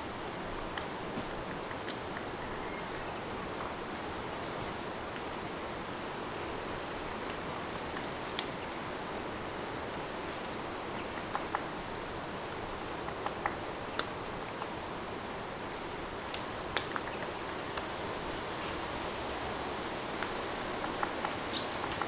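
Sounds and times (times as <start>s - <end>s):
light ticks: 7.2s - 8.6s.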